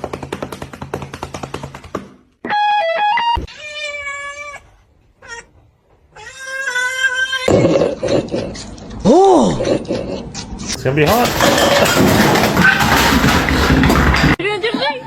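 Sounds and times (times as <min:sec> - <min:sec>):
cat meowing: 0:03.4 - 0:07.5.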